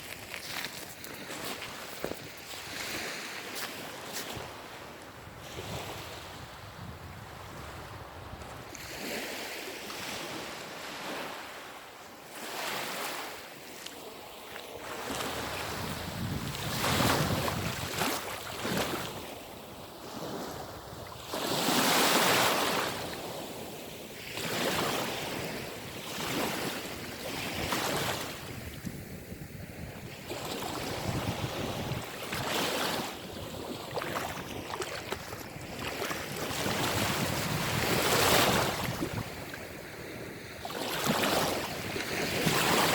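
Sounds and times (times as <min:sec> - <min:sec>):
waves washing onto shore: 0:01.1 - 0:42.9
wind on microphone: 0:04.3 - 0:09.1, 0:15.0 - 0:19.3, 0:26.3 - 0:42.9.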